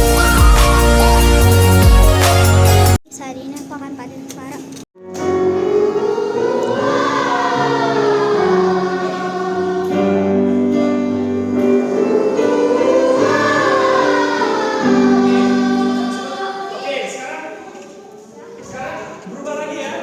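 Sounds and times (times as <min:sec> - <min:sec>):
church choir singing: 0:05.2 - 0:18.3.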